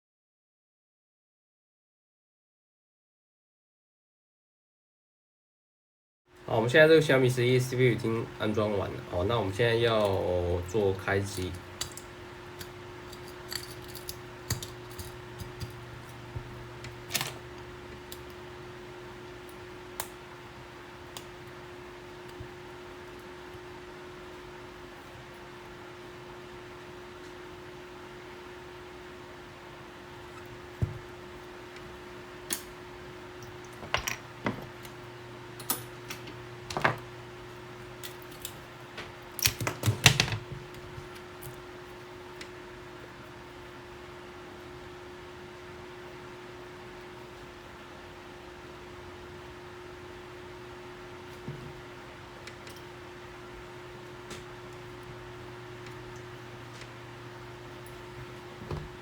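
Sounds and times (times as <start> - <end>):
electrical hum: 6.3 - 59.0.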